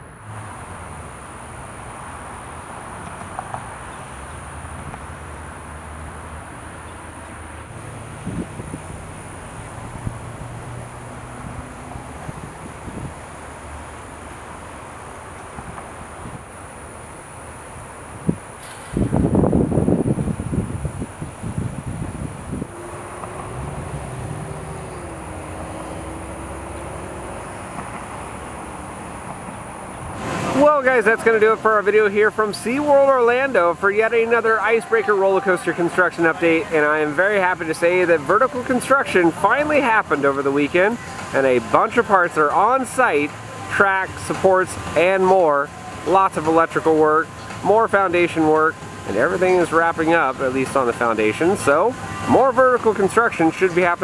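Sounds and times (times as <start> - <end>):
low engine hum: 0.0 - 54.0
mechanical drone: 21.8 - 29.3.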